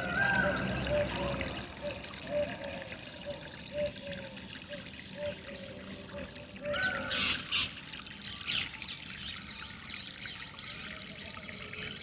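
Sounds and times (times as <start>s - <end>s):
water trickling and pouring: 0.0s - 12.0s.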